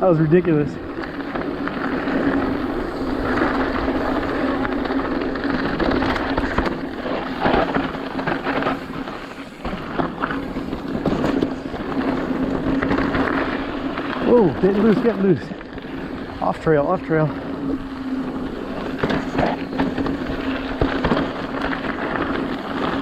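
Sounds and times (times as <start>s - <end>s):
bike knocking and rattling: 0.0s - 23.0s
steady buzz: 0.0s - 23.0s
tyres on dirt: 0.0s - 23.0s
wind rushing over microphone: 0.0s - 23.0s.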